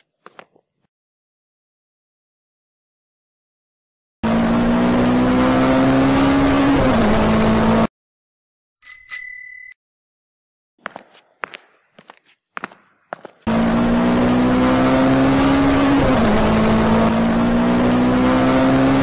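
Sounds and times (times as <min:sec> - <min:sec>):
bell dinging: 0:08.8 - 0:09.8
vehicle engine running: 0:13.4 - 0:19.0.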